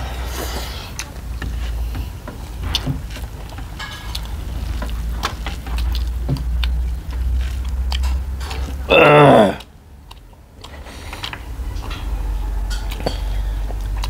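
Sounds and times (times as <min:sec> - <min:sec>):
person chewing food: 0:00.0 - 0:14.0
steady low hum: 0:00.0 - 0:14.0
crackles and clicks: 0:00.4 - 0:08.9.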